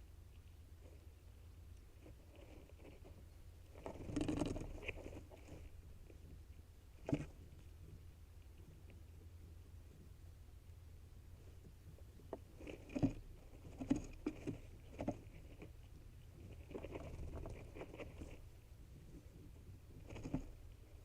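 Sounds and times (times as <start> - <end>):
steady low hum: 0.0 - 21.0
bird rustling in nest box: 12.3 - 15.8, 16.4 - 21.0.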